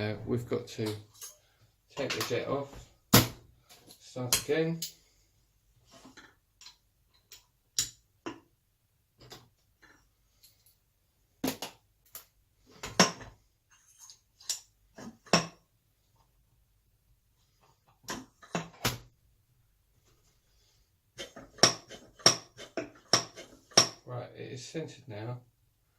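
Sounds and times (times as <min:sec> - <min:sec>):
metallic clicks of small parts: 0:00.8 - 0:01.4, 0:06.2 - 0:08.0, 0:11.6 - 0:12.4, 0:13.8 - 0:14.7.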